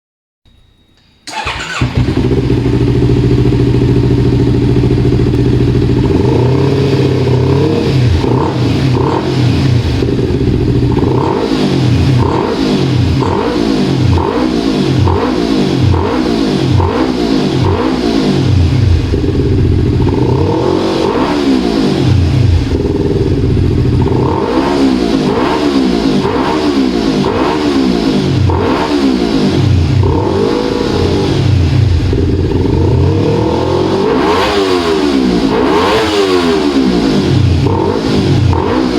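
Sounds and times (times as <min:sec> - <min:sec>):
motorcycle engine revving: 0:01.2 - 0:38.9.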